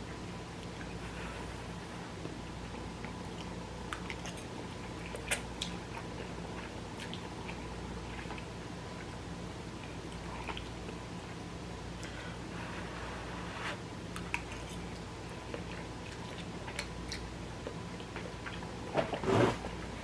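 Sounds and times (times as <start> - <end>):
steady low hum: 0.0 - 20.0
person chewing noodles: 3.0 - 11.0.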